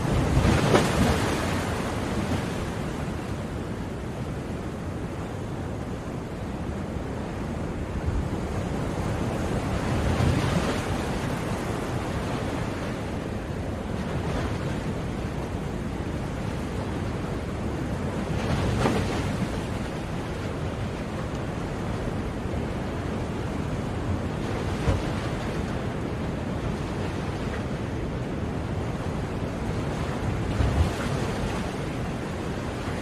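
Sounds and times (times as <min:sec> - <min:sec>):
waves breaking loudly: 0:00.0 - 0:02.6
ocean waves washing: 0:00.0 - 0:33.0.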